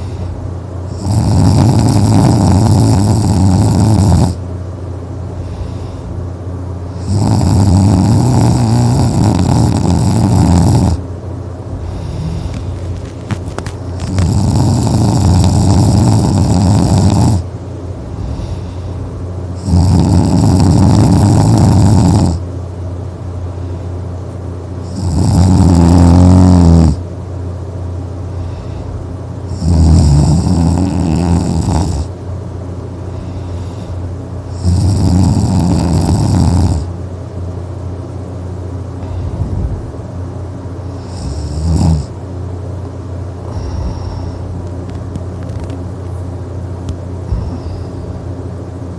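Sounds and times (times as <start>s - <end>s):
person snoring: 0.9s - 4.4s, 6.9s - 11.0s, 11.8s - 17.5s, 19.6s - 22.4s, 24.8s - 27.0s, 29.5s - 32.1s, 33.2s - 36.9s, 40.9s - 42.1s, 43.5s - 44.5s, 47.3s - 48.0s.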